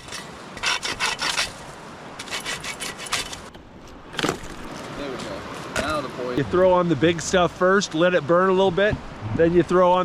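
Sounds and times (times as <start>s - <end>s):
hand saw cutting firewood: 0.0s - 3.5s.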